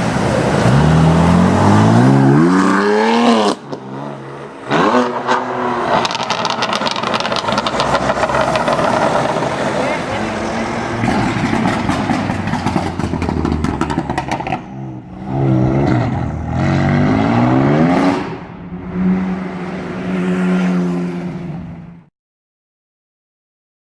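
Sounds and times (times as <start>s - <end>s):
car engine accelerating: 0.0s - 22.1s
exhaust crackles and pops: 5.9s - 10.0s, 11.0s - 14.8s.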